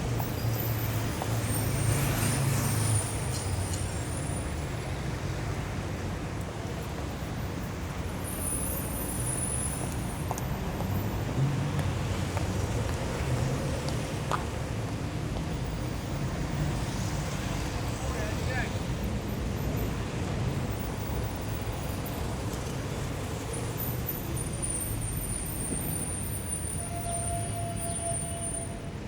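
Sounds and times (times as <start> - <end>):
traffic engine hum: 0.0 - 27.1
tyre noise on asphalt: 8.2 - 18.3.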